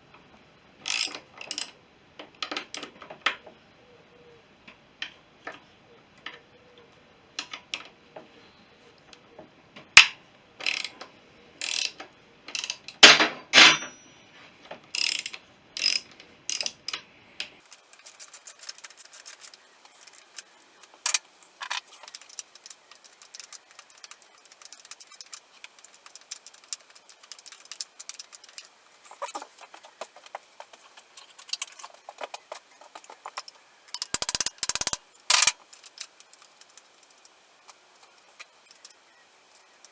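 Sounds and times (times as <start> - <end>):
socket ratchet clicking: 10.6 - 10.9, 11.6 - 12.0, 12.6 - 13.2, 15.0 - 16.8, 17.7 - 21.2, 33.3 - 36.6
sharp metal knocks: 13.0 - 14.1.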